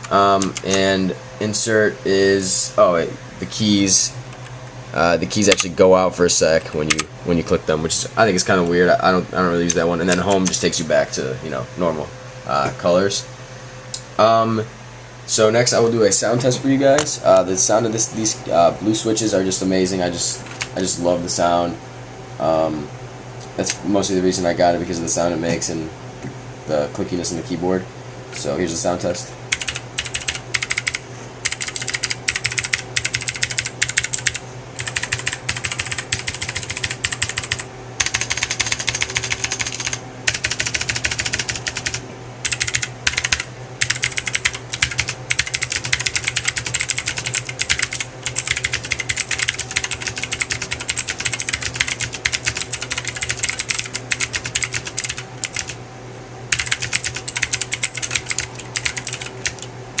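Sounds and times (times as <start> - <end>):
fast clicky keyboard typing: 0.0 - 0.8, 29.5 - 55.8, 56.5 - 59.7
steady low hum: 0.0 - 60.0.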